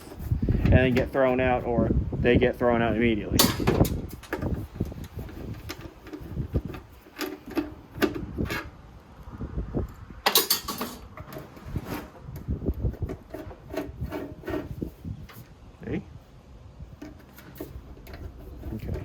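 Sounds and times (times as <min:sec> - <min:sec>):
parts clattering: 0:03.3 - 0:08.9, 0:10.2 - 0:15.6, 0:16.9 - 0:19.0.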